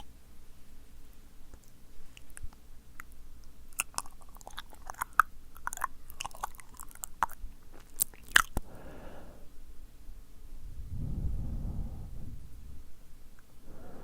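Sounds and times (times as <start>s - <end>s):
tongue clicks and lip smacks: 1.5s - 8.7s
soft breath of air: 8.6s - 9.6s, 10.6s - 13.0s, 13.6s - 14.0s.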